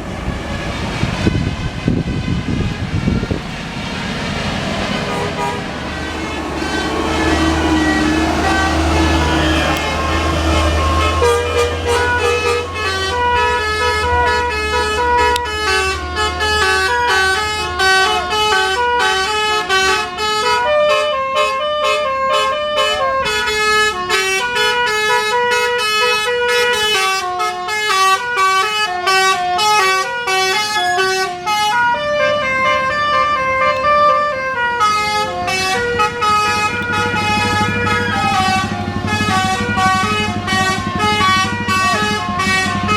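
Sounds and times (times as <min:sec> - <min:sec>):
low engine rumble: 0:00.0 - 0:20.8, 0:30.2 - 0:42.9
multi-tone bus horn melody: 0:00.0 - 0:42.9.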